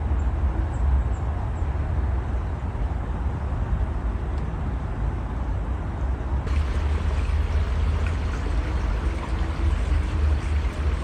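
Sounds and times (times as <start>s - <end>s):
low unsteady rumble: 6.3s - 11.0s
river water rushing: 6.5s - 11.0s.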